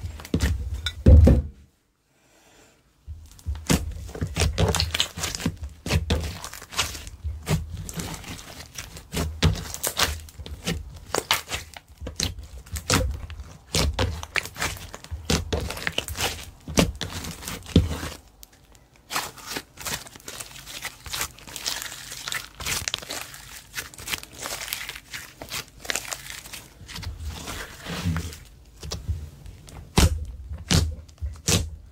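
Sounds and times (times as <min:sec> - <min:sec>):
sticky slime pops and crackles: 0:03.4 - 0:08.1, 0:29.9 - 0:31.8.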